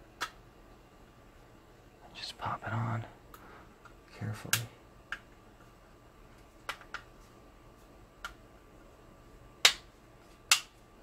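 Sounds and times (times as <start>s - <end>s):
loud sharp plastic snaps: 9.6s - 9.9s, 10.5s - 10.8s.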